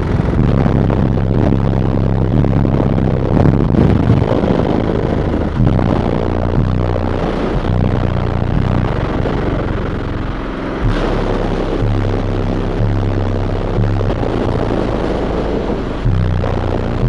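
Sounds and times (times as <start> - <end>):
car body rattling and buzzing: 0.0 - 17.0
loud deep bass from subwoofers: 0.0 - 17.0.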